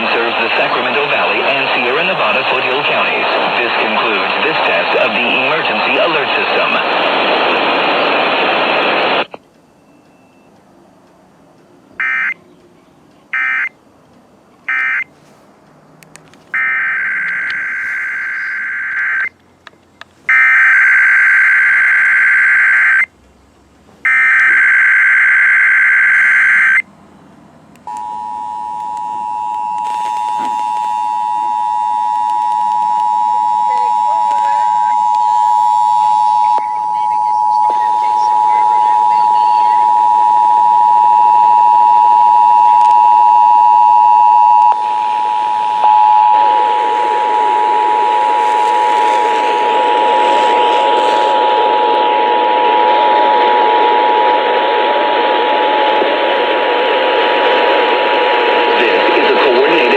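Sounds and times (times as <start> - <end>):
warbling data tone bursts: 16.6 - 19.3, 27.9 - 54.4
two-tone attention signal: 27.9 - 51.2.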